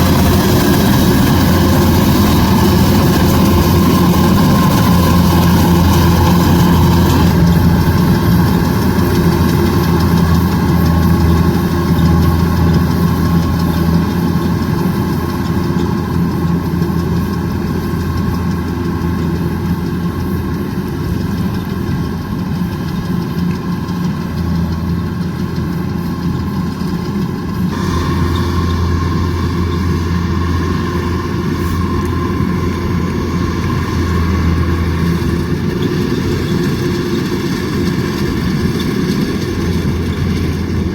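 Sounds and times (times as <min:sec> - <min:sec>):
combine harvester engine: 0:00.0 - 0:40.9
threshing machinery: 0:00.0 - 0:40.9.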